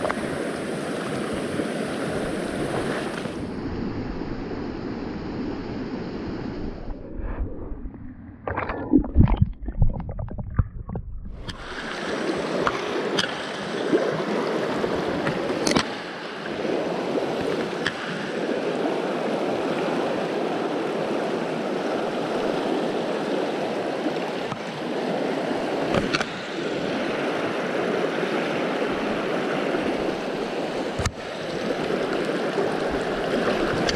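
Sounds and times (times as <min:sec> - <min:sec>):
river water rushing: 0:00.0 - 0:03.9, 0:11.5 - 0:33.9.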